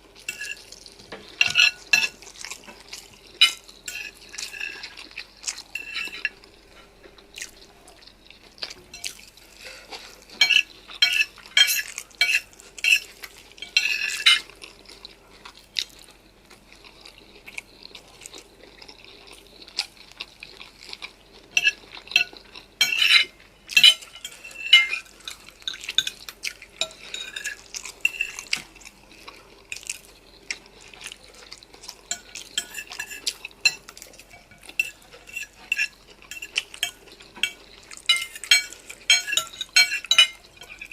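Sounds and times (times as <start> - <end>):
wet chewing: 0.0 - 40.9
utensils scraping a bowl: 0.3 - 5.0, 5.6 - 6.9, 8.9 - 14.5, 21.5 - 28.6, 32.0 - 40.9.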